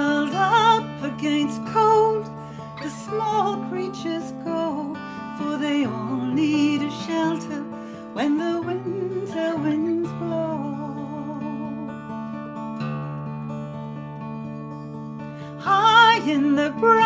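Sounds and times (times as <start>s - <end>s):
acoustic guitar accompaniment: 0.0s - 17.0s.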